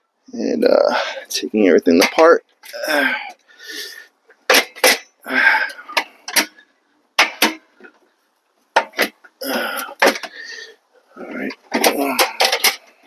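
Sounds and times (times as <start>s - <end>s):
metal clicks and knocks: 5.9s - 6.6s, 7.2s - 8.1s, 8.7s - 10.4s, 11.5s - 13.0s.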